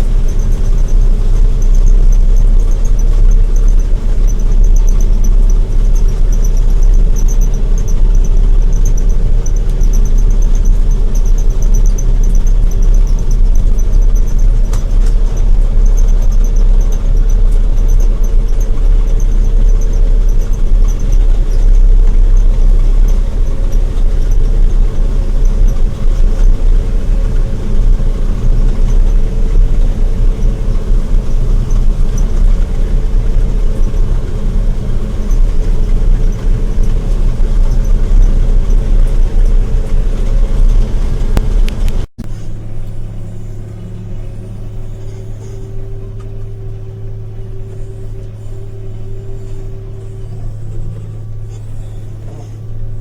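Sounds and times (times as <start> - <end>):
fast high pulsing: 0.0 - 42.0
diesel engine rumbling under load: 0.0 - 53.0.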